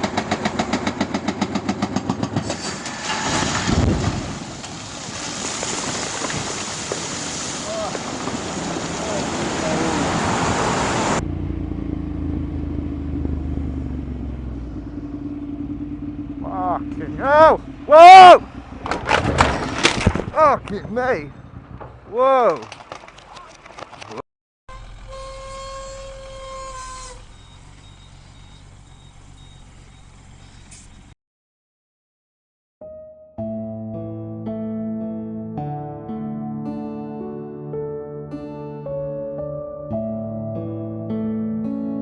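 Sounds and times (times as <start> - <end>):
vehicle engine running: 0.0 - 2.4, 10.7 - 19.8, 24.7 - 31.1
vehicle horn: 24.7 - 27.4.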